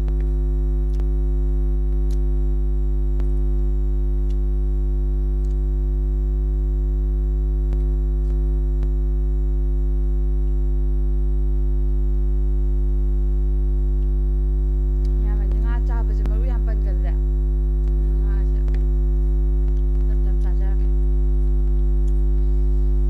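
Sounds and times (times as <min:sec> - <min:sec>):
loud electrical hum: 0:00.0 - 0:23.0
person speaking: 0:15.0 - 0:17.2, 0:18.0 - 0:18.8, 0:20.0 - 0:20.9.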